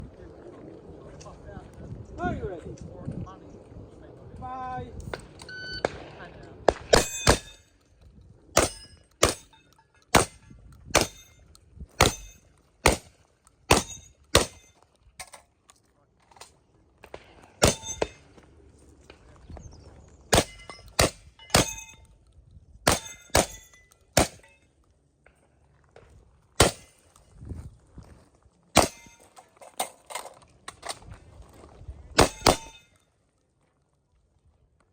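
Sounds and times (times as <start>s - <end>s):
shotgun shots with metallic ring: 6.7s - 7.7s, 8.6s - 11.4s, 12.0s - 13.1s, 13.7s - 14.7s, 17.6s - 18.2s, 20.3s - 22.0s, 22.9s - 24.6s, 26.6s - 27.0s, 28.8s - 29.4s, 32.2s - 32.9s.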